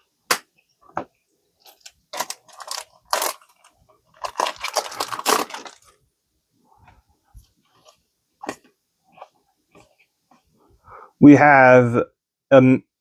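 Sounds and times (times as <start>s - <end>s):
cards and wrapper crinkling: 1.6s - 6.0s.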